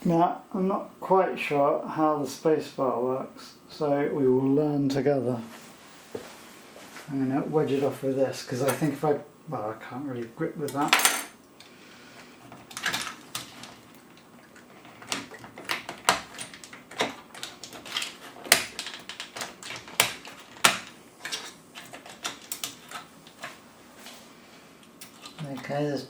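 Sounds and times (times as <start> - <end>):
tool scraping plastic: 12.2 - 24.2.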